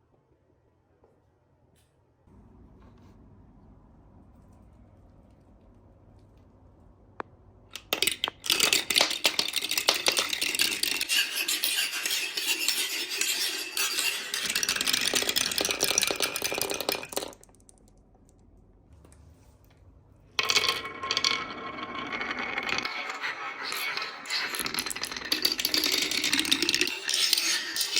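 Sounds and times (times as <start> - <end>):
marbles clattering down a track: 7.8 - 18.0, 20.4 - 27.9.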